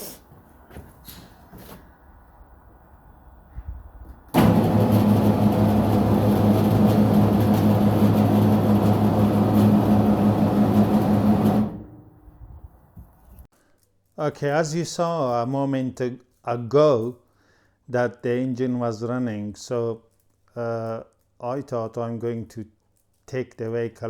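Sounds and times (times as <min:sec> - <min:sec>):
car engine starting and running: 0:04.4 - 0:12.2.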